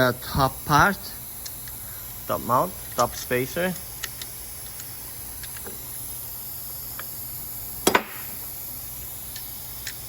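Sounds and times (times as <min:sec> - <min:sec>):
low workshop background: 0:00.0 - 0:10.0
parts knocking together: 0:07.8 - 0:08.3.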